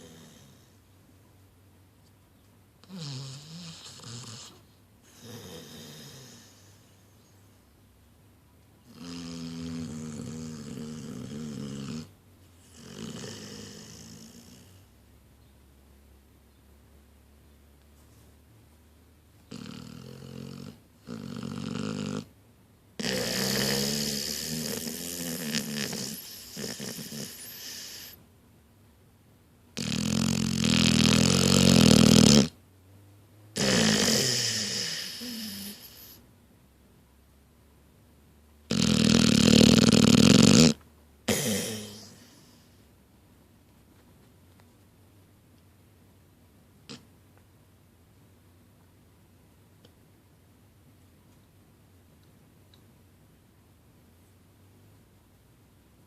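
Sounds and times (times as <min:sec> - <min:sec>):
puppy snoring: 0:00.0 - 0:00.9, 0:02.8 - 0:07.2, 0:08.8 - 0:15.0, 0:19.4 - 0:22.4, 0:23.0 - 0:28.2, 0:29.8 - 0:32.6, 0:33.5 - 0:36.2, 0:38.6 - 0:42.9, 0:46.8 - 0:47.1.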